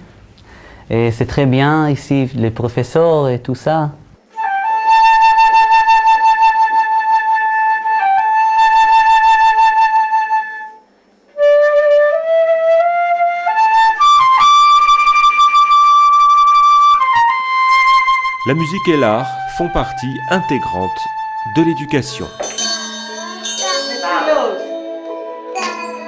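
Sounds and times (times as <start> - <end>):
flute playing slow melody: 4.3 - 23.2, 24.5 - 26.0.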